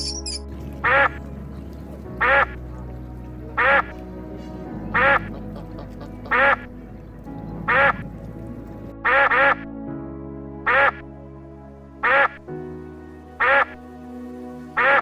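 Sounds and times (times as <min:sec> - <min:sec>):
background music: 0:00.0 - 0:15.0
duck quacking: 0:00.8 - 0:01.2, 0:02.2 - 0:02.6, 0:03.6 - 0:04.0, 0:04.8 - 0:06.7, 0:07.7 - 0:08.0, 0:09.0 - 0:09.6, 0:10.7 - 0:11.0, 0:12.0 - 0:12.4, 0:13.4 - 0:13.8, 0:14.8 - 0:15.0.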